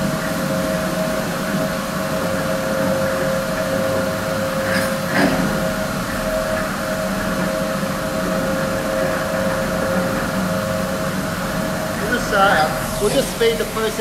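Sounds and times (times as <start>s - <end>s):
washing machine motors whining: 0.0s - 14.0s.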